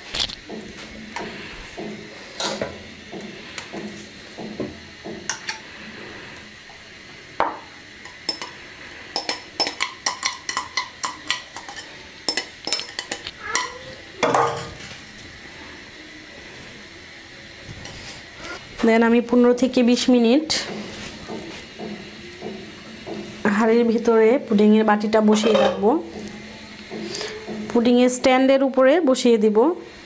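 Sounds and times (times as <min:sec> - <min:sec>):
utensil clinking against steel bowl: 0:08.0 - 0:14.7, 0:25.3 - 0:25.9.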